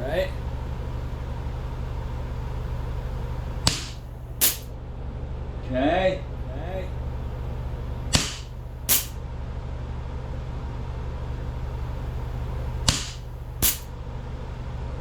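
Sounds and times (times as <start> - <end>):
steady low hum: 0.0 - 15.0
air pistol pops: 3.6 - 4.7, 8.1 - 9.2, 12.9 - 13.9
sharp crack: 3.6 - 4.7, 8.1 - 9.2, 12.9 - 14.0.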